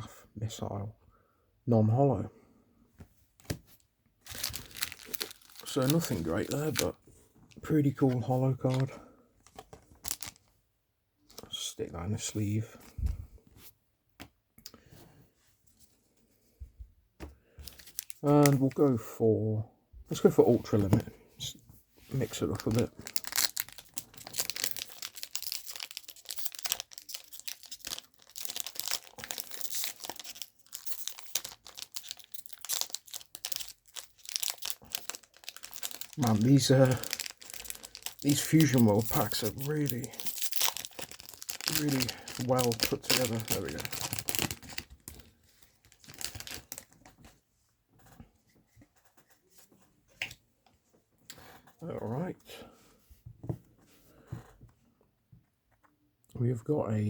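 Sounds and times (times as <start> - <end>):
cards rustling: 4.2 - 6.9, 7.5 - 10.4, 17.6 - 18.8, 20.1 - 21.2, 22.1 - 47.3
foil wrapper crinkling and tearing: 4.2 - 6.9, 10.0 - 10.4, 17.7 - 18.8, 22.2 - 47.1.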